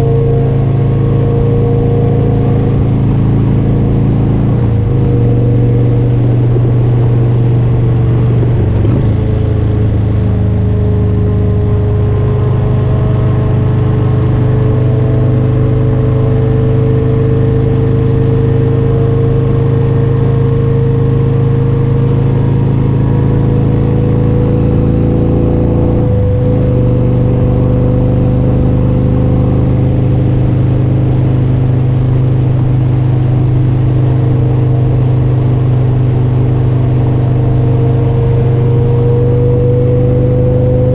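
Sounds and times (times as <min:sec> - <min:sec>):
motorcycle engine running: 0:00.0 - 0:40.9
wind and road noise: 0:00.0 - 0:40.9.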